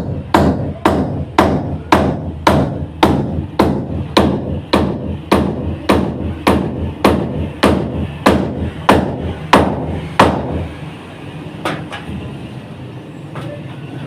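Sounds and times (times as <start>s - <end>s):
hammer blows: 0.0s - 10.8s.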